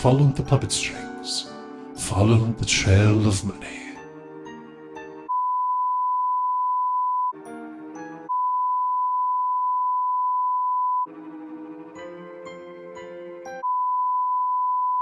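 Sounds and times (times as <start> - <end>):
chorded music: 0.0 - 5.3, 7.4 - 8.3, 11.1 - 13.6.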